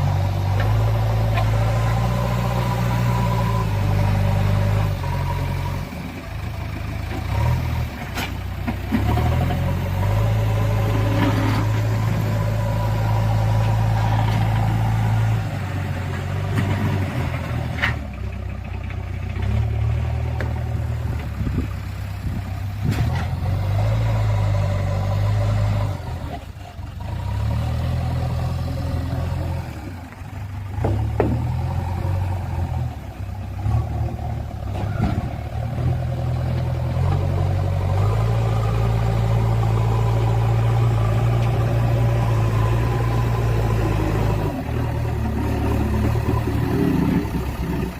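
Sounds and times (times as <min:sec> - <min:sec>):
diesel engine revving under load: 0:00.0 - 0:47.9.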